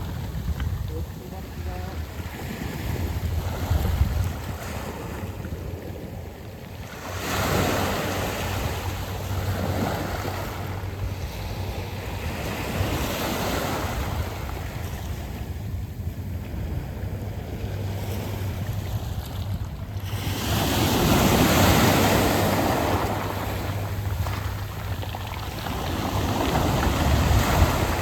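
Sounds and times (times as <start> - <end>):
waves washing over pebbles: 0.0 - 28.0
wind rumble on microphone: 0.0 - 28.0.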